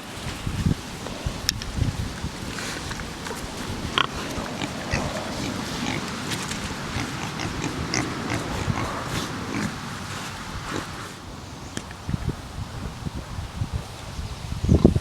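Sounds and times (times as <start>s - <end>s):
pigs grunting: 0.9s - 12.0s.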